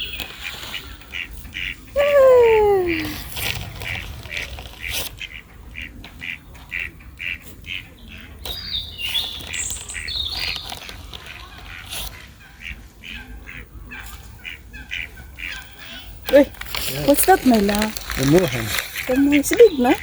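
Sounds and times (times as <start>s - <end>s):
waterbirds calling: 0.0s - 20.0s
bird chirps: 5.2s - 11.0s.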